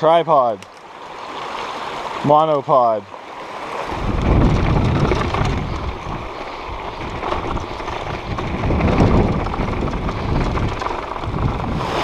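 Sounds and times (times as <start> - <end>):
creek rushing: 0.0 - 12.0
wind buffeting microphone: 3.6 - 12.0.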